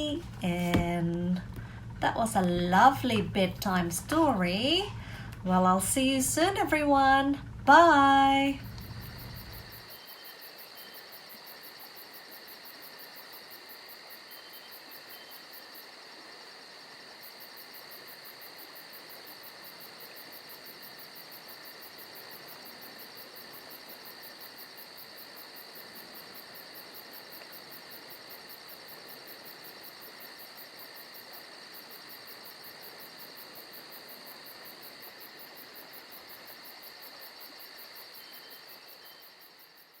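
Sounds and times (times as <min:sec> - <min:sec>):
crickets chirring: 0:08.3 - 0:40.0.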